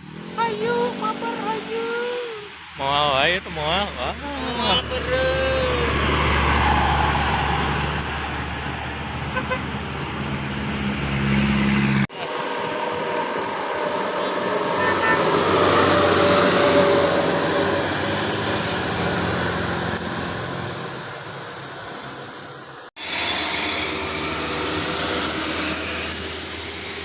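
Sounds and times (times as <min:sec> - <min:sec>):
bus engine humming: 0:00.0 - 0:22.9
bus passing by: 0:00.0 - 0:27.0
faint horn tones: 0:13.7 - 0:17.4.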